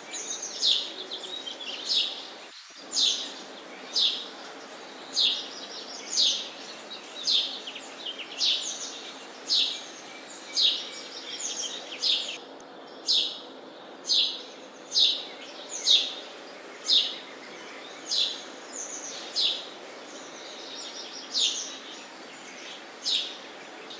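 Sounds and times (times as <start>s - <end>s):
steady background hiss: 0.0s - 23.9s
sparrow chirping: 5.2s - 17.3s, 17.9s - 21.9s.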